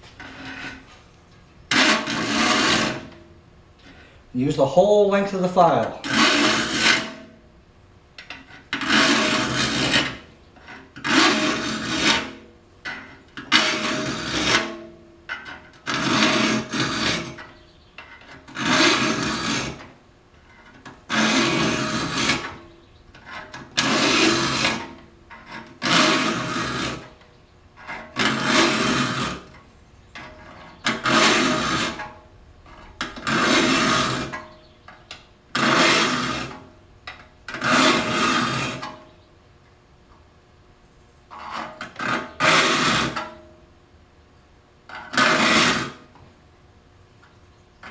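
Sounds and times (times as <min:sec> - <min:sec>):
file rasping across saw teeth: 0:01.7 - 0:03.2, 0:06.0 - 0:07.3, 0:08.6 - 0:12.4, 0:15.9 - 0:19.9, 0:21.1 - 0:27.2, 0:27.8 - 0:29.6, 0:30.2 - 0:32.0, 0:33.0 - 0:34.4, 0:35.6 - 0:36.6, 0:37.6 - 0:39.0, 0:41.6 - 0:43.2.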